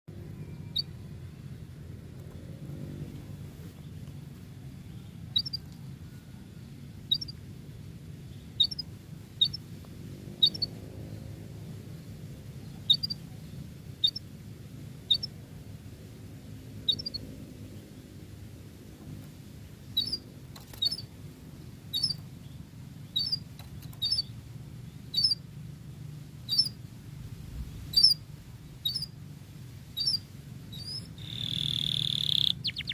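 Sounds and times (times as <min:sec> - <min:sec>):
canary chirping: 0:00.1 - 0:01.2, 0:05.0 - 0:05.7, 0:07.0 - 0:07.4, 0:08.2 - 0:09.7, 0:10.4 - 0:10.8, 0:12.6 - 0:14.3, 0:15.0 - 0:15.4, 0:16.8 - 0:17.3, 0:19.9 - 0:21.1, 0:21.8 - 0:24.4, 0:25.0 - 0:25.4, 0:26.4 - 0:26.8, 0:27.9 - 0:28.2, 0:28.8 - 0:29.2, 0:29.9 - 0:32.9
steady low hum: 0:00.1 - 0:32.9.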